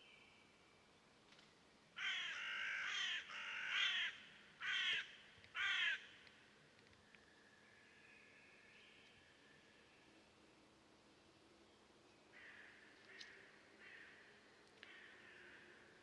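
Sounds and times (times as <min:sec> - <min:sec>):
bird cawing harshly: 0:02.0 - 0:06.0.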